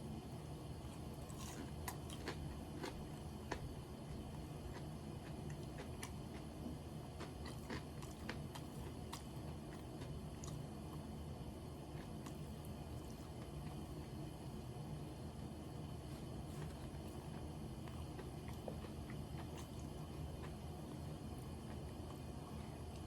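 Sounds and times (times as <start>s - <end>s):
low steady hum: 0.0s - 23.0s
person chewing food: 0.8s - 11.0s, 11.9s - 13.9s, 16.0s - 23.0s.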